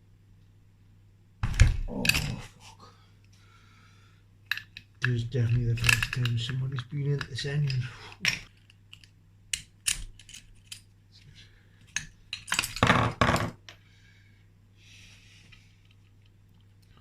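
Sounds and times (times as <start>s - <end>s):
metal engine parts clinking: 4.5s - 10.8s, 11.9s - 13.0s.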